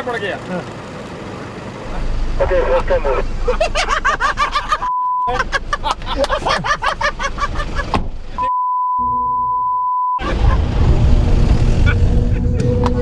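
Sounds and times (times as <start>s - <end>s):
car engine and driving rumble: 0.0s - 8.4s, 10.2s - 13.0s
person talking: 1.9s - 3.6s
censor bleep: 8.4s - 10.2s.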